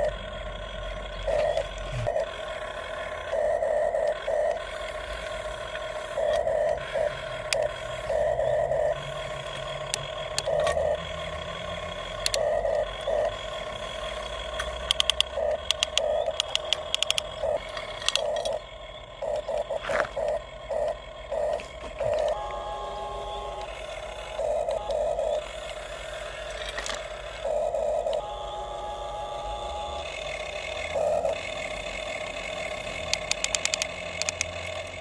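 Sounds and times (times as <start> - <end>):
low hum: 0.0 - 35.0
small gear motors whining: 0.0 - 35.0
rapid clicking: 14.5 - 18.6, 30.9 - 35.0.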